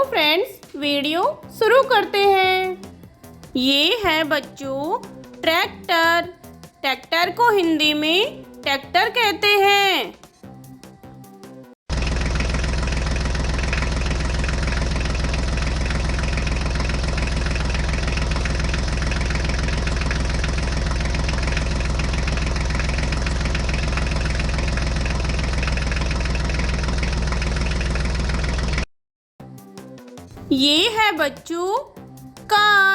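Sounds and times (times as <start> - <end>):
tractor engine idling: 11.9 - 28.9.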